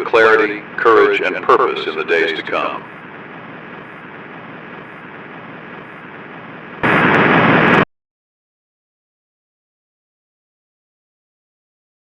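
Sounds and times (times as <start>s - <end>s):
broadcast static hiss: 0.0s - 7.8s
loud burst of static: 0.0s - 7.9s.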